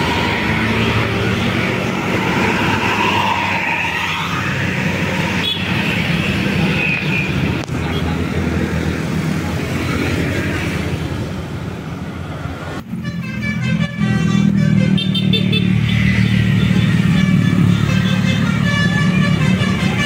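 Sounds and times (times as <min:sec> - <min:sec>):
bus engine running: 0:00.0 - 0:03.0
multi-tone musical air horn: 0:12.9 - 0:15.7, 0:16.7 - 0:20.0.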